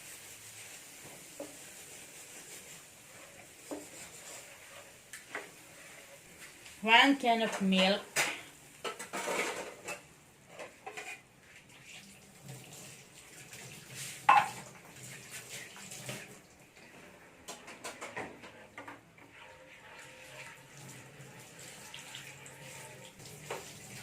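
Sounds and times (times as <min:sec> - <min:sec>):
spoon clinking and scraping pan: 0:14.3 - 0:14.6
milk pouring into pan: 0:19.2 - 0:24.0.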